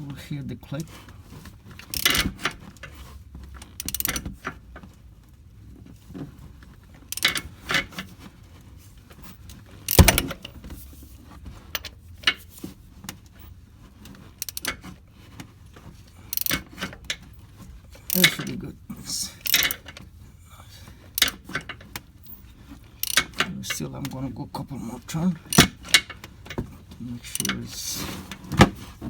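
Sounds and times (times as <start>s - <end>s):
metallic clicks and clanks: 1.8s - 3.0s, 3.7s - 4.6s, 7.1s - 7.8s, 9.8s - 10.6s, 14.4s - 14.9s, 16.3s - 17.4s, 18.0s - 18.6s, 19.4s - 20.1s, 21.1s - 24.2s, 25.4s - 28.8s.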